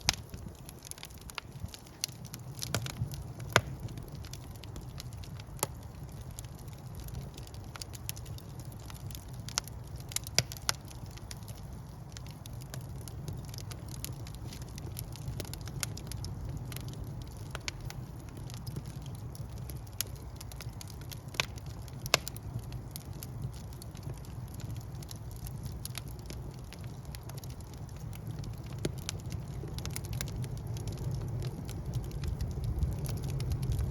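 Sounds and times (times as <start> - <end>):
fire flames rumbling: 0.0 - 33.9
logs crackling and popping: 0.0 - 33.9.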